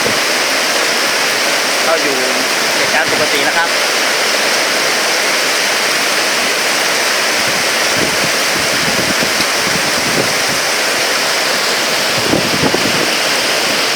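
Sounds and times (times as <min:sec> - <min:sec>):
wind gusts buffeting microphone: 0:00.0 - 0:13.9
loud storm wind rushing: 0:01.8 - 0:03.8, 0:06.2 - 0:13.9.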